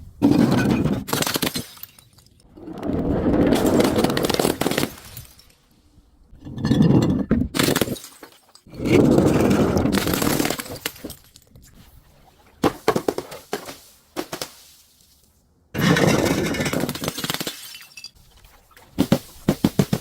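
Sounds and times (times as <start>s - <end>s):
glass bottles shattering: 0.2s - 2.5s, 3.6s - 5.7s, 6.6s - 8.7s, 15.8s - 18.2s.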